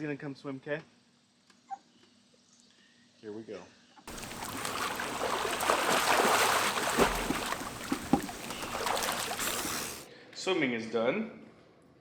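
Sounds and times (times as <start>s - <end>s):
water splashing in a pool: 4.1s - 10.1s.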